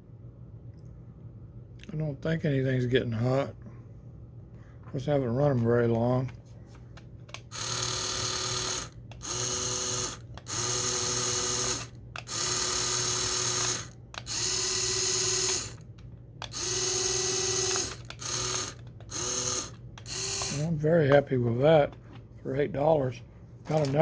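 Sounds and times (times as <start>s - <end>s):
toy motors whirring: 7.3s - 21.2s.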